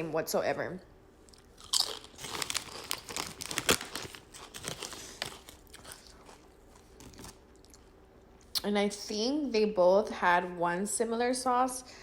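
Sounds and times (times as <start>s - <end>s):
food wrapper crinkling: 1.3s - 7.9s.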